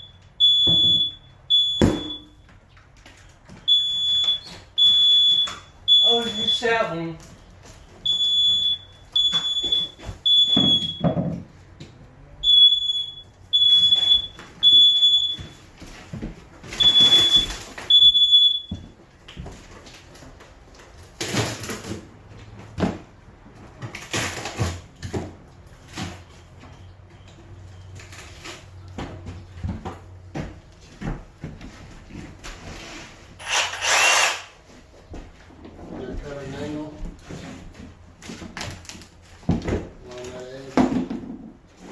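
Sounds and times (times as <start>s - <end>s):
smoke alarm beeping: 0.0s - 2.6s, 3.6s - 7.1s, 7.8s - 11.2s, 12.4s - 15.7s, 16.7s - 18.9s.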